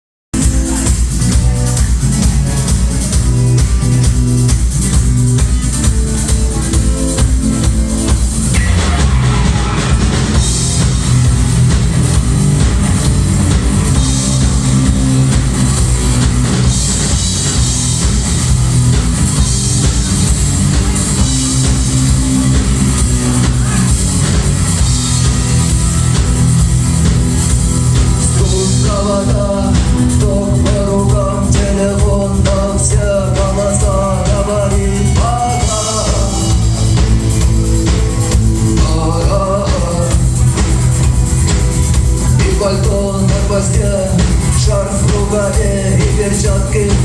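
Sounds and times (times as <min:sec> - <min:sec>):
rock music: 0:00.3 - 0:47.0
person singing: 0:28.0 - 0:37.5, 0:38.2 - 0:40.8, 0:42.2 - 0:47.0.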